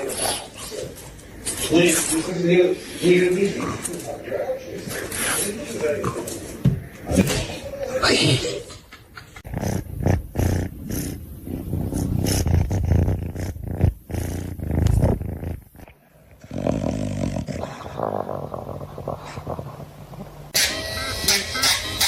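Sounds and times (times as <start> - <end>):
dog growling: 9.4 - 20.6.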